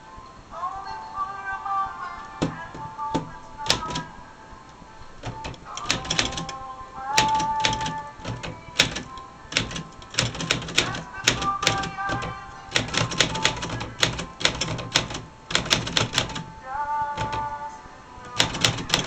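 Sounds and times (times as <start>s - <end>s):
music playing: 0.0s - 19.0s
typewriter keys clacking: 2.4s - 4.1s, 5.2s - 6.6s, 7.2s - 17.6s, 18.2s - 19.0s.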